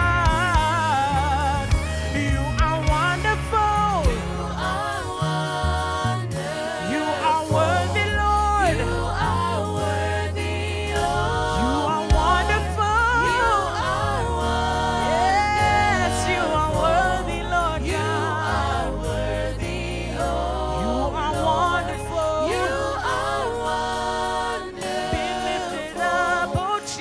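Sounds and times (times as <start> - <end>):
bass line: 0.0 - 27.0
gospel singers: 0.0 - 27.0
drum beat: 0.1 - 1.0, 1.7 - 3.4, 12.1 - 12.6.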